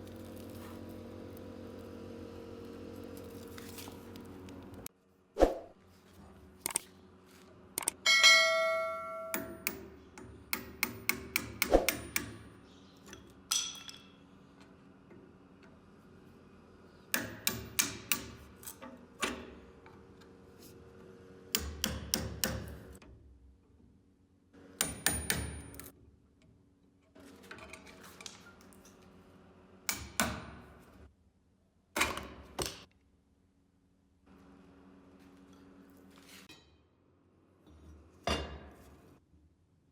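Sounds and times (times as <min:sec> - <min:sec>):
metal objects clinking: 0:07.9 - 0:09.4
ringing metallic strike: 0:08.1 - 0:09.7.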